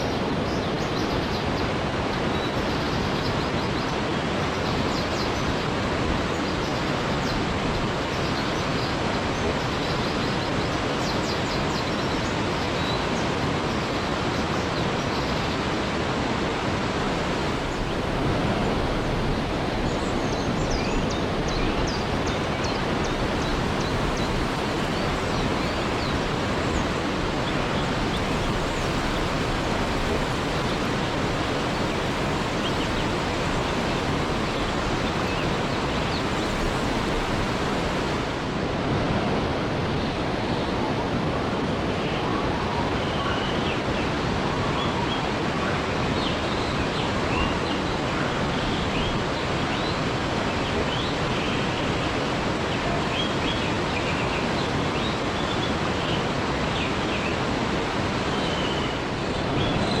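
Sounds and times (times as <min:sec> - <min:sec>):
waterfall splashing: 0:16.0 - 0:40.4.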